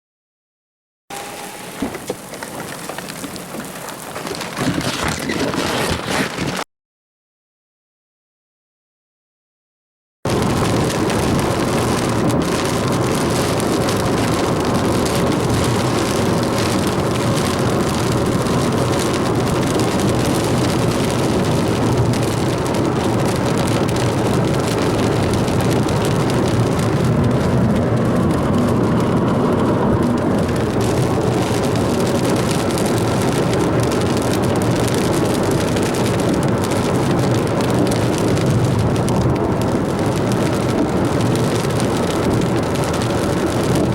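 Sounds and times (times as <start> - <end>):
car engine and road rumble: 1.1 - 6.6, 10.3 - 43.9
rain on a car: 1.1 - 6.6, 10.3 - 43.9.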